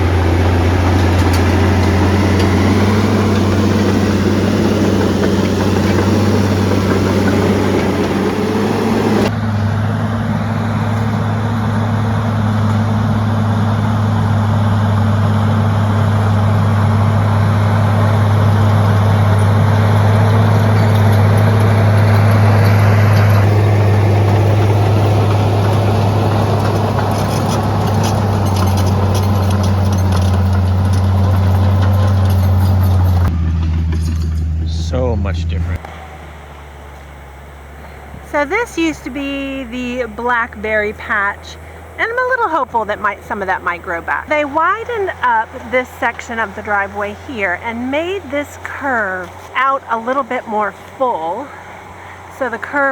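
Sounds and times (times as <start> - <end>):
large engine running: 0.0 - 52.9.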